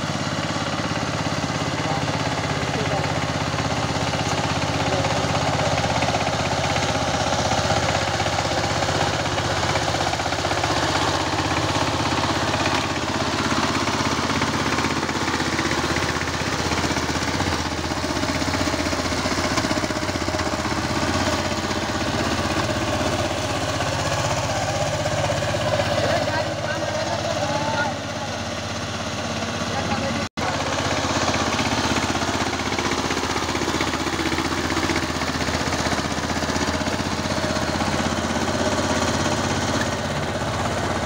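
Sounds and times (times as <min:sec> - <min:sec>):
diesel engine knocking steadily: 0:00.0 - 0:41.0.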